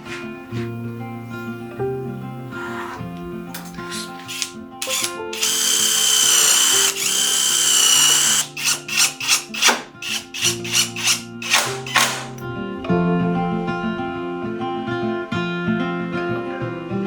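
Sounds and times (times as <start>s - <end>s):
power drill whining: 3.7s - 12.5s.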